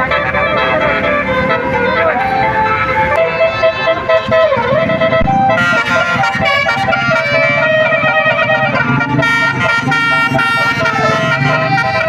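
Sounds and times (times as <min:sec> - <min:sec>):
multi-tone air horn melody: 0:00.0 - 0:12.0.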